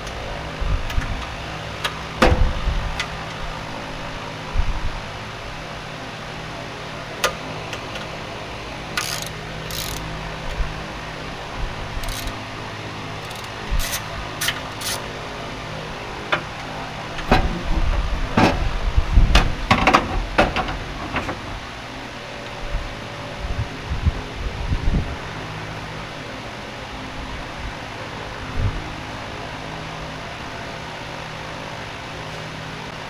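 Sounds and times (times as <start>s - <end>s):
steady low hum: 0.0s - 33.0s
hand tools clicking and knocking: 12.0s - 12.4s, 13.3s - 15.0s.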